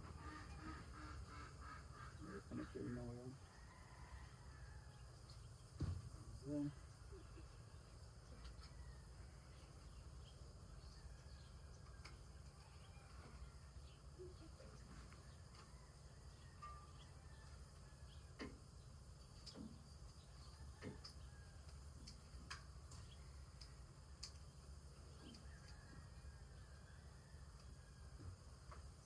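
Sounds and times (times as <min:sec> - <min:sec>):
steady low hum: 0:00.0 - 0:03.6
faint clicks: 0:21.0 - 0:24.5.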